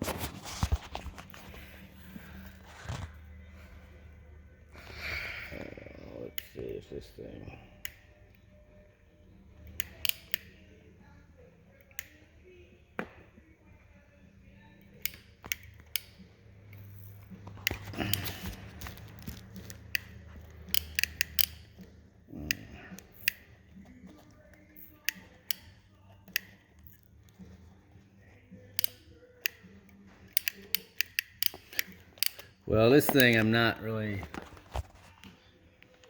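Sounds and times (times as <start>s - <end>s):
hand tools clicking and clattering: 16.8s - 23.5s, 30.2s - 35.2s.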